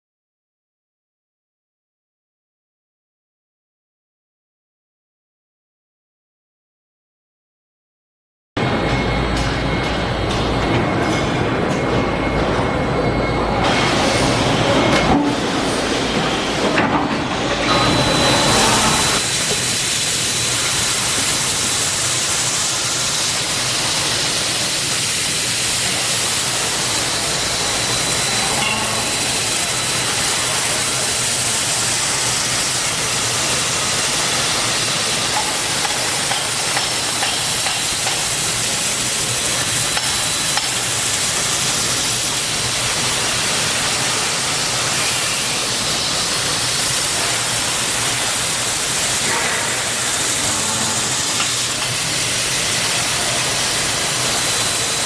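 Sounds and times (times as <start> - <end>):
drilling machine hissing: 17.6 - 55.0.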